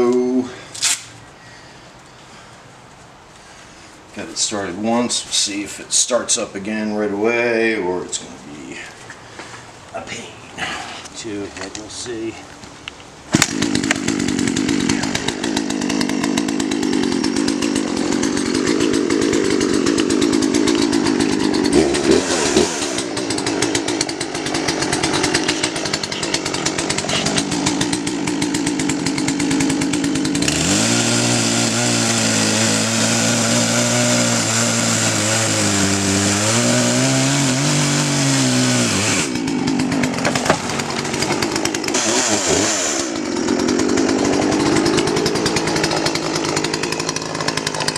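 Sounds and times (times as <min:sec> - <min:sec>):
chainsaw engine running: 0:13.3 - 0:47.9.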